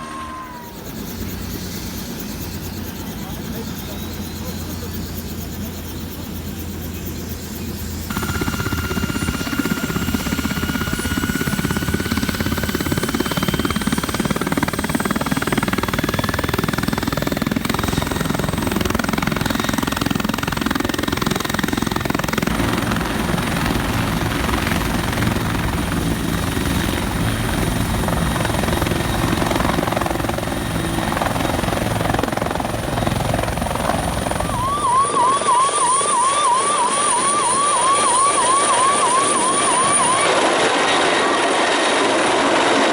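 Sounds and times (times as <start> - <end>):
helicopter rotor and engine: 0.0 - 42.9
turbine whine rising in pitch: 8.1 - 40.2.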